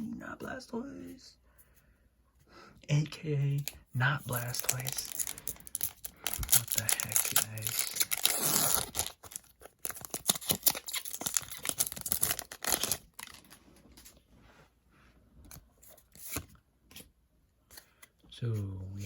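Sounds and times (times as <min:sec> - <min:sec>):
wrapper and cards rustling: 0:03.6 - 0:14.2
foil wrapper tearing and crinkling: 0:04.3 - 0:13.5.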